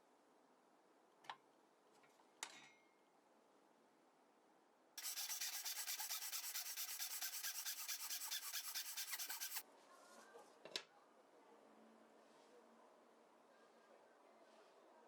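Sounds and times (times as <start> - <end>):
wood being sanded by hand: 5.0 - 9.6.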